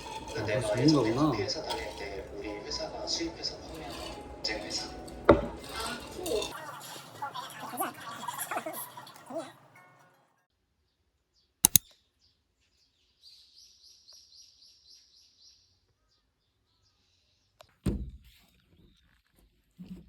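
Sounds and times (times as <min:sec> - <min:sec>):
sharp click: 0:11.6 - 0:12.0.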